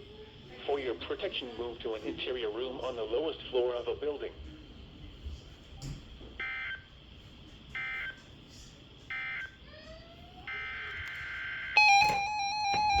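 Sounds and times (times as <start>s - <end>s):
two-tone beeps: 11.8s - 13.0s.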